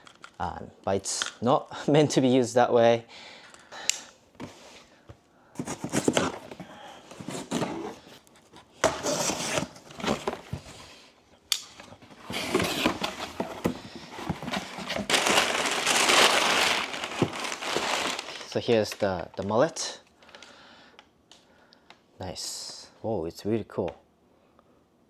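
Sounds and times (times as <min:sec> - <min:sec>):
cardboard box rustling and scraping: 0:05.6 - 0:10.9, 0:12.0 - 0:18.5
paper crinkling: 0:12.0 - 0:19.2.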